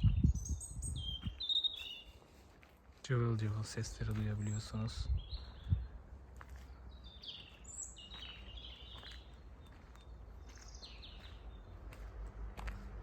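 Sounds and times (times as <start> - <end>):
wind rumble on microphone: 0.0 - 1.4, 4.9 - 6.0
small birds chirping and twittering: 0.0 - 12.8.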